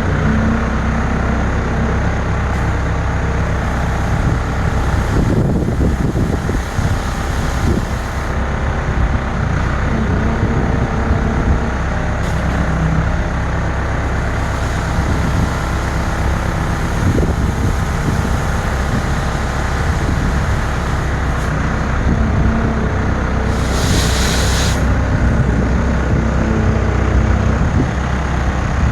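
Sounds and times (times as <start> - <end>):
heavy diesel engine running: 0.0 - 28.9
burst of hiss: 2.6 - 8.4, 12.2 - 22.0, 23.4 - 25.0.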